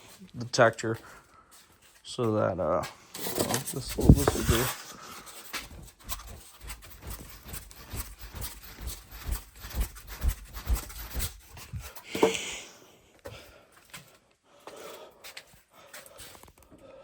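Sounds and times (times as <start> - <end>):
fanning whooshes: 5.4 - 12.3.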